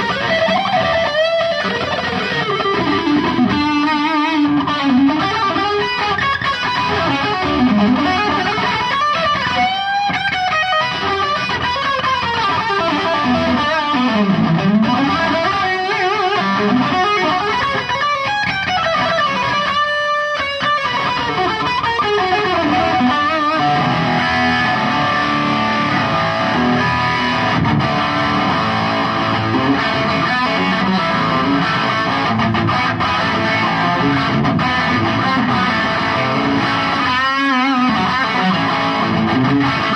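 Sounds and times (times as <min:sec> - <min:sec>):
distorted electric guitar: 0:00.0 - 0:39.9.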